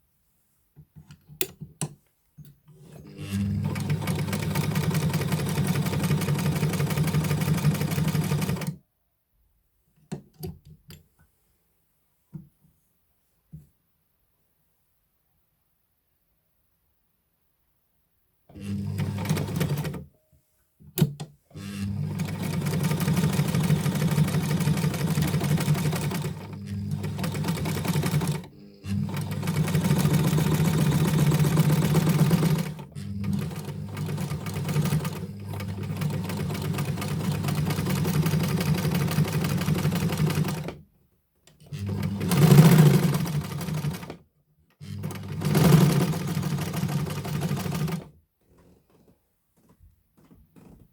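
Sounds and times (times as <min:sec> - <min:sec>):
sewing machine sewing: 0:02.7 - 0:08.8, 0:18.5 - 0:20.0, 0:21.0 - 0:40.8, 0:41.6 - 0:44.2, 0:44.8 - 0:48.1.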